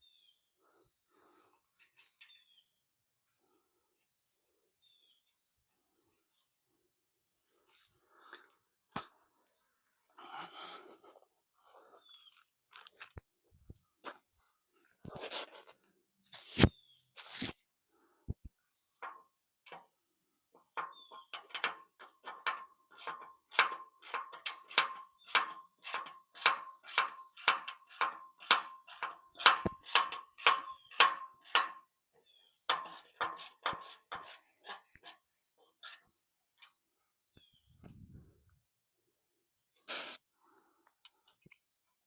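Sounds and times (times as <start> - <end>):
sharp metallic clicks: 20.8 - 31.8.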